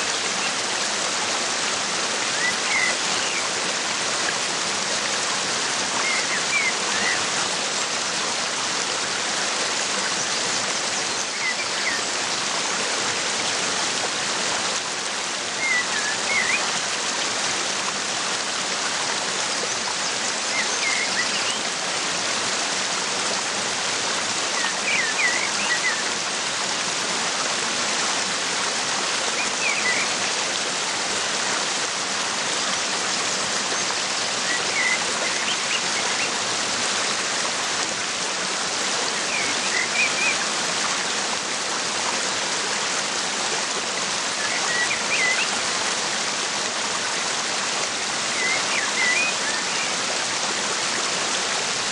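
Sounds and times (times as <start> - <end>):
waterfall rushing: 0.0 - 51.9
birds chirping: 44.4 - 45.6, 48.3 - 50.0.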